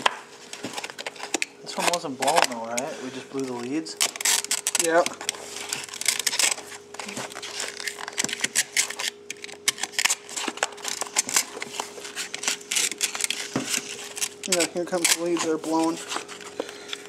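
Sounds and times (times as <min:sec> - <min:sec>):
faint steady hum: 0:00.0 - 0:17.0
speaker cone tearing and scraping: 0:00.6 - 0:17.0.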